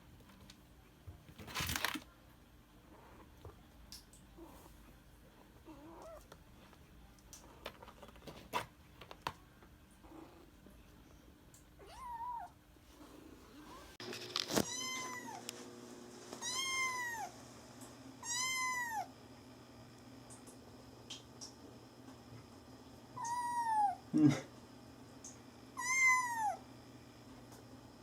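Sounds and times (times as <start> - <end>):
kitten meowing: 11.8 - 12.6, 14.6 - 15.4, 16.4 - 17.3, 18.2 - 19.1, 23.2 - 24.0, 25.8 - 26.6.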